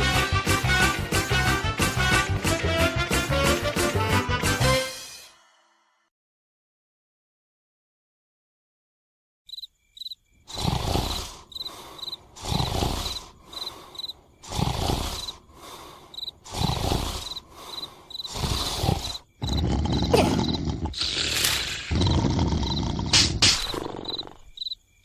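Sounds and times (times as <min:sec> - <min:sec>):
crickets chirping: 0:09.5 - 0:25.0
cartoon snoring: 0:10.5 - 0:24.6.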